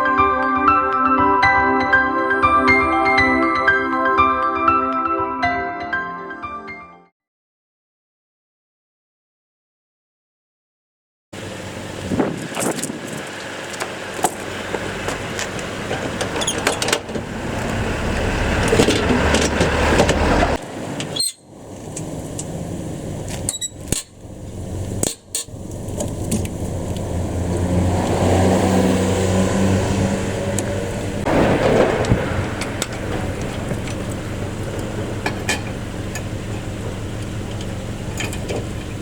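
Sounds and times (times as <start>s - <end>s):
motor vehicle running: 11.4s - 39.0s.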